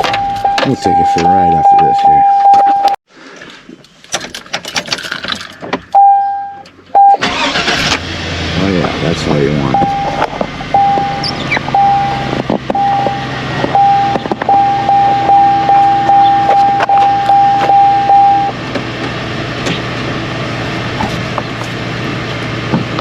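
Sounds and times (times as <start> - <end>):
electronic warning chime: 0.0 - 3.0, 6.0 - 7.2, 9.7 - 10.2, 10.8 - 18.5
truck engine idling: 6.0 - 23.0.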